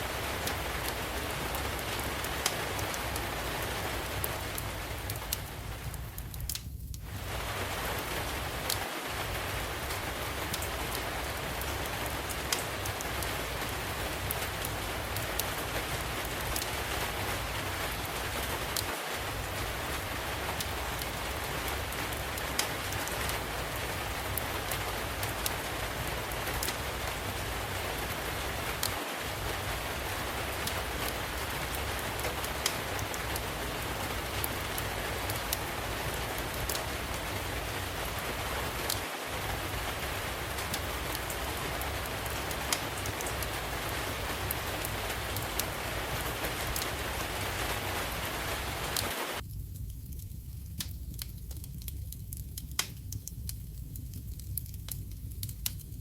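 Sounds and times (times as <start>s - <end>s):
heavy rain: 0.0s - 56.0s.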